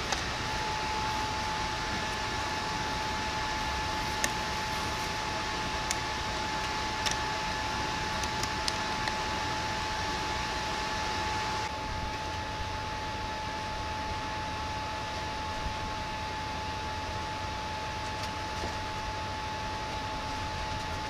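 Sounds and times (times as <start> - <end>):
mechanical whir with high whine: 0.0 - 21.0.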